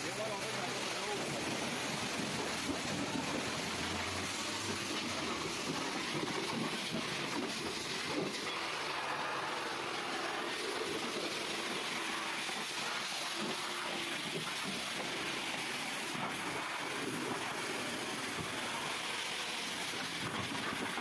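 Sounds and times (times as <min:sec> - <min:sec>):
car wash machinery hissing: 0:00.0 - 0:21.0.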